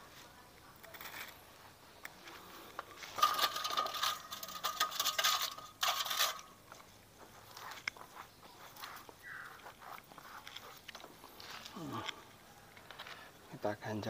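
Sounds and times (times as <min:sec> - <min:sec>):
metal tools clinking and scraping: 0:02.2 - 0:06.9
metal clatter: 0:03.0 - 0:06.8.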